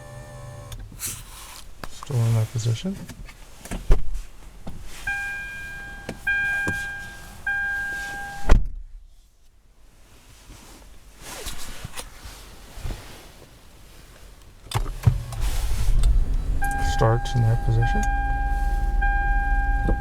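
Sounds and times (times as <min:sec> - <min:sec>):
car warning chime: 0:05.1 - 0:08.6, 0:15.4 - 0:20.0
loud thump: 0:17.9 - 0:20.0.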